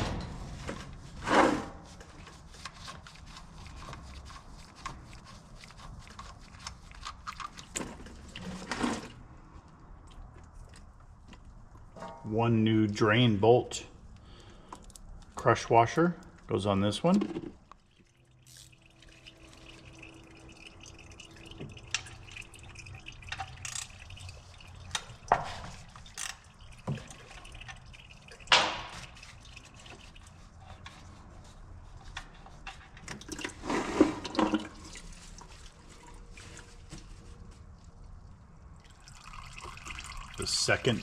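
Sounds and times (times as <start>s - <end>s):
oil dripping into a pan: 17.6s - 30.9s, 38.0s - 40.8s.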